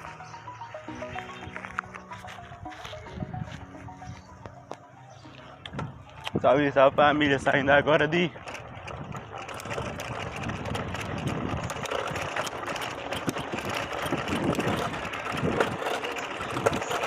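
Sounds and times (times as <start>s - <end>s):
bicycle road noise: 0.0s - 17.0s
wind on microphone: 8.7s - 15.8s.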